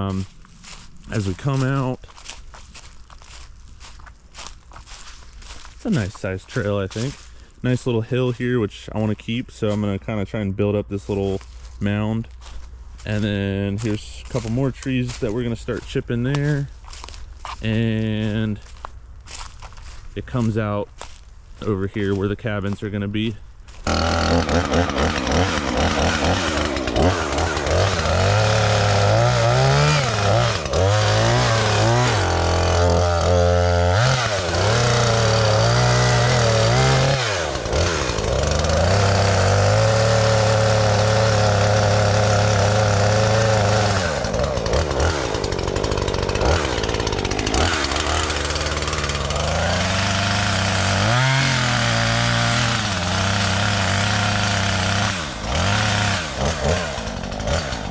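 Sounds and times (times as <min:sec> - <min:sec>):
chainsaw engine revving: 0:23.7 - 0:57.9.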